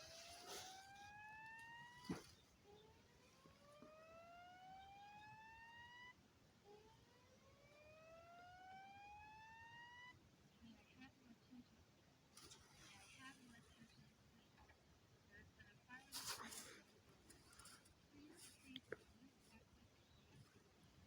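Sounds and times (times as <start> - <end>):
alarm speaker slow whoop tone: 7.7 - 10.2.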